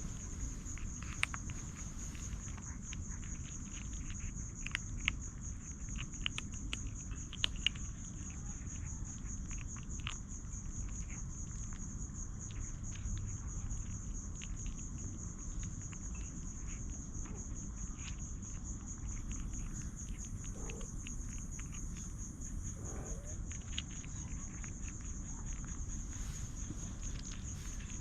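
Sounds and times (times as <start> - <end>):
small clicks and rustles: 0.0 - 28.0
insect trilling: 18.9 - 28.0.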